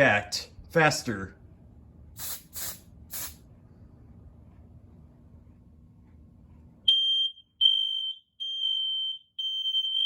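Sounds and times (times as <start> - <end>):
faint low hum: 2.9 - 7.4
smoke alarm beeping: 6.9 - 10.0.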